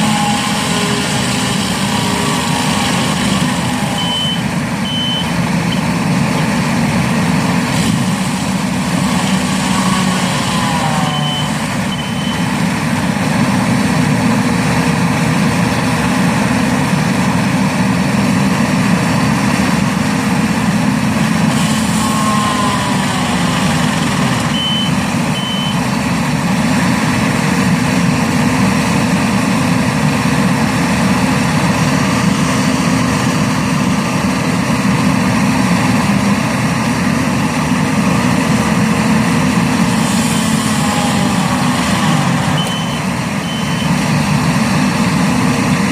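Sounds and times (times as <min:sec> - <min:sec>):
loader engine with stump grinder: 0:00.0 - 0:45.9
reverse alarm beeps: 0:04.0 - 0:05.8, 0:11.2 - 0:12.5, 0:24.5 - 0:25.8, 0:42.6 - 0:44.0.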